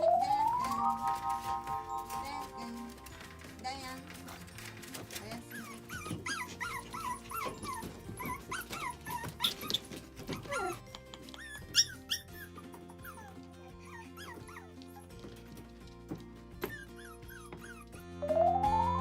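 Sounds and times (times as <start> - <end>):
background music: 0.0 - 19.0
small dog whining and yipping: 5.4 - 15.1, 16.6 - 19.0.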